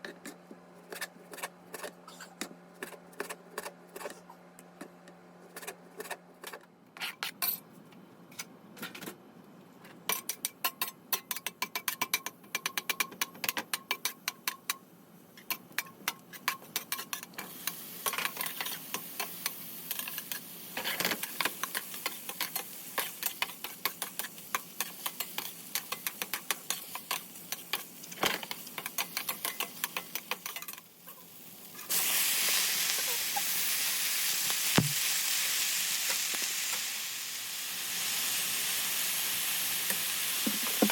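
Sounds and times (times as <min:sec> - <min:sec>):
food sizzling in hot oil: 0:16.4 - 0:40.9.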